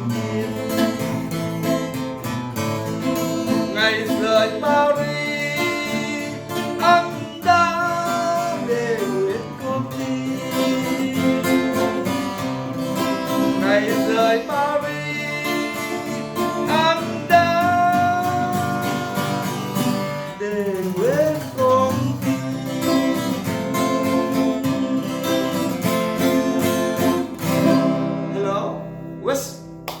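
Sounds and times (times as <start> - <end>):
acoustic guitar strumming: 0.0 - 30.0
person singing long notes: 3.6 - 12.4, 13.4 - 25.1.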